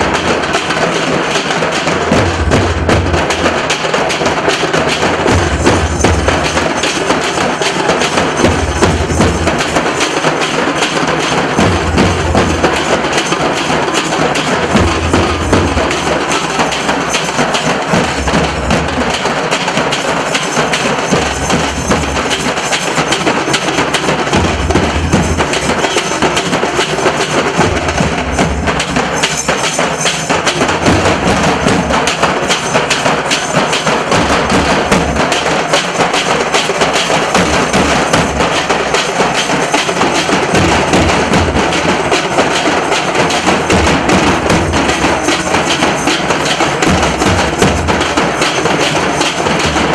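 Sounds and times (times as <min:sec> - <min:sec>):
dhol drum ensemble drumming: 0:00.0 - 0:49.9.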